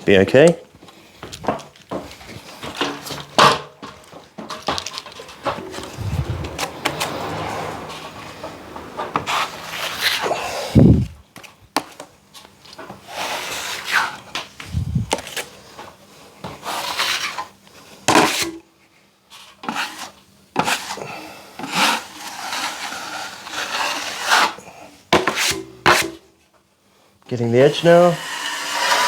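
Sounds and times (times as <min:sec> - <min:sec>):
plastering blade scraping: 0:05.2 - 0:11.2, 0:13.0 - 0:15.4, 0:21.6 - 0:24.6, 0:27.7 - 0:29.0.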